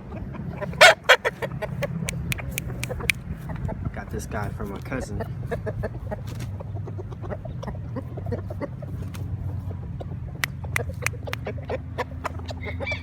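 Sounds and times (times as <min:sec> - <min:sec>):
roosters clucking: 0:00.0 - 0:13.0
sharp clicks: 0:01.8 - 0:03.2.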